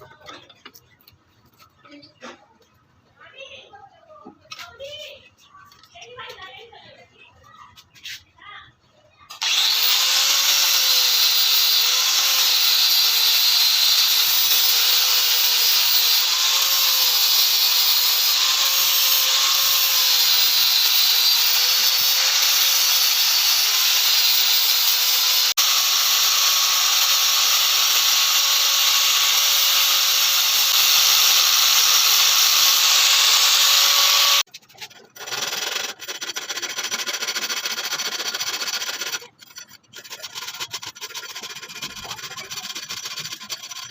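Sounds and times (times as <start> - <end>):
electric power tool running: 9.3 - 34.5.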